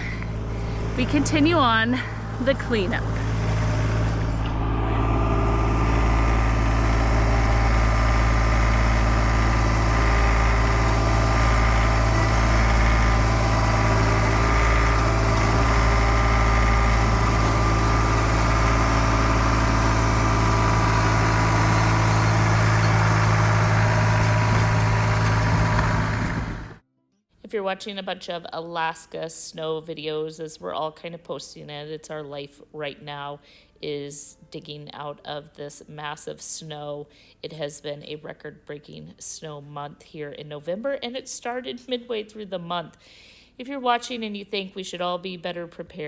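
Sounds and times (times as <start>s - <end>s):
tractor engine running: 0.0s - 26.8s.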